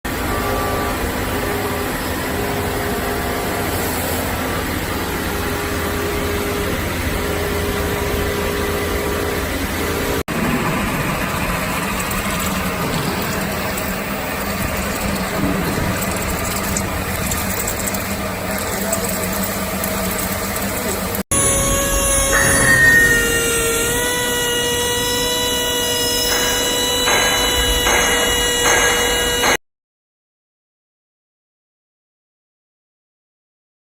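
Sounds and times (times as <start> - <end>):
different steady machine sound: 0.1 - 29.6
machinery humming and hissing: 0.1 - 29.6.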